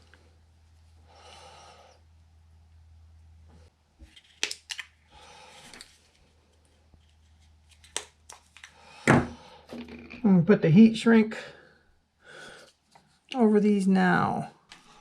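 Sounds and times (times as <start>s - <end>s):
low steady hum: 0.0s - 4.2s
person breathing out: 11.5s - 12.7s.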